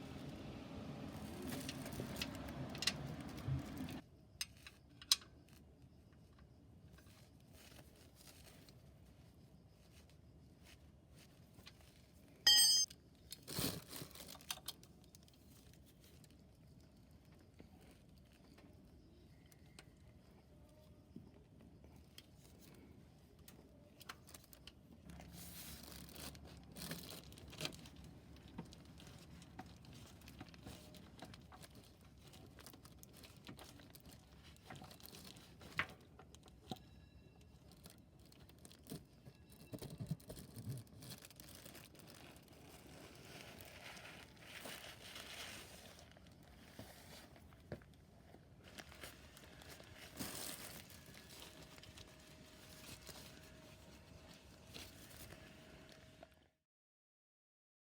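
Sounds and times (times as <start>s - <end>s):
faint rustling and crinkling: 1.0s - 12.4s, 13.2s - 56.3s.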